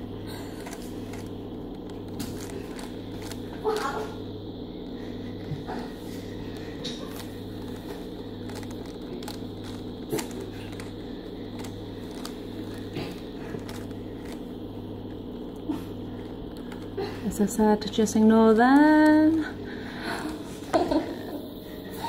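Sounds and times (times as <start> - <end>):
steady low hum: 0.0 - 22.0
puzzle cube plastic clicking: 7.1 - 12.9.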